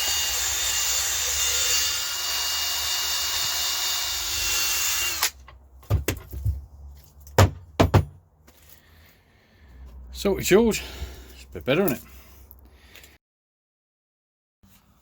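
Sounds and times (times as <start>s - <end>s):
power drill whining: 0.0s - 5.4s
short knocks: 7.3s - 8.2s.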